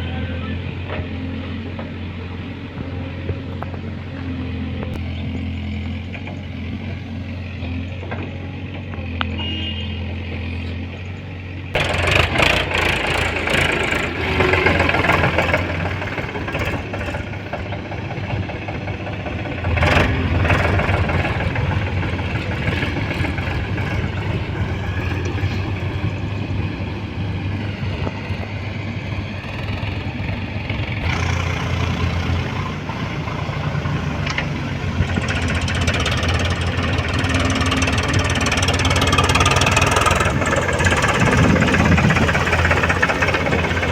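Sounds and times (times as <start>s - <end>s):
diesel engine humming: 0.0s - 43.9s.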